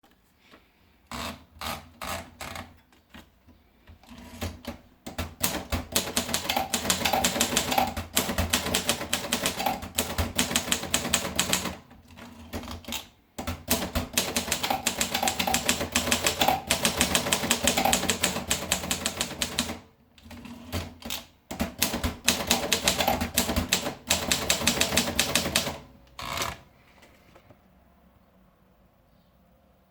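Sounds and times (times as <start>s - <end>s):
typewriter keystrokes clattering: 4.0s - 25.9s.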